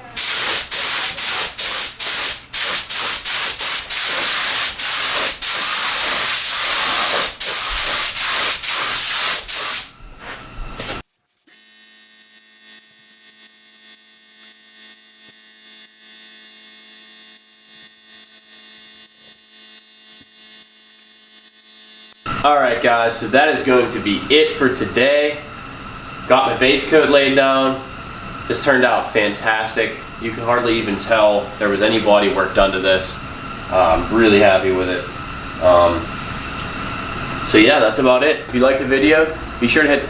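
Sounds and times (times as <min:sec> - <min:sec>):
spray gun hissing: 0:00.0 - 0:11.0, 0:22.3 - 0:40.0.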